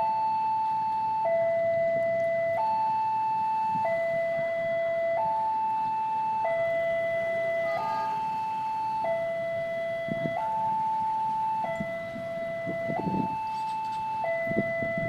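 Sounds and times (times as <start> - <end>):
level crossing two-tone alarm: 0.0 - 15.0
low rumble of traffic: 0.0 - 15.0.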